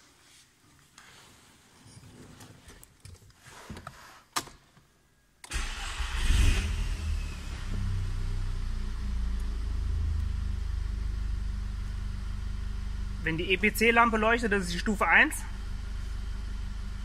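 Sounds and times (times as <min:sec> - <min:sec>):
car engine starting and idling: 0:05.4 - 0:17.0.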